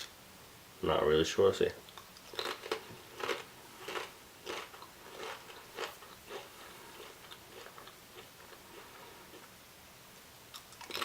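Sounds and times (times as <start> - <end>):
crisps crunching while chewed: 1.9 - 9.6, 10.5 - 11.0.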